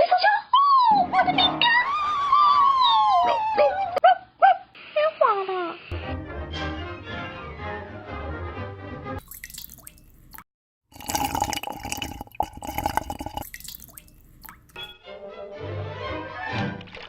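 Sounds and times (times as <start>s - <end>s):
music: 0.9s - 1.9s, 5.9s - 9.2s, 14.8s - 17.0s
water dripping and spattering: 9.2s - 14.9s.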